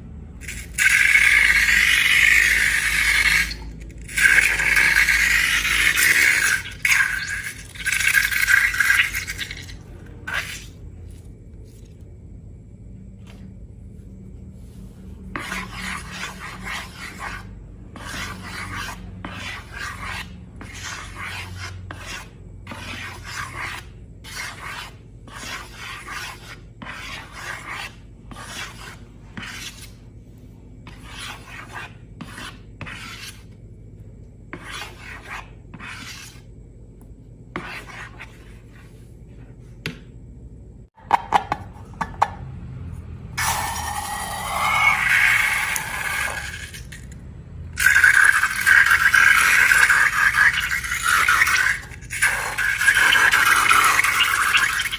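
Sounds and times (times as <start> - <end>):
rasping scraping strokes: 14.6 - 30.1, 30.8 - 33.5, 34.5 - 36.5.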